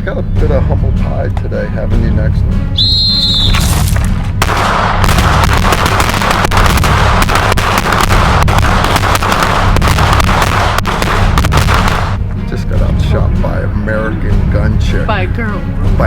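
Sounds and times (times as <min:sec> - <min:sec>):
music with steady bass: 0:00.0 - 0:07.3, 0:08.0 - 0:16.0
rapid pistol fire: 0:03.5 - 0:12.2.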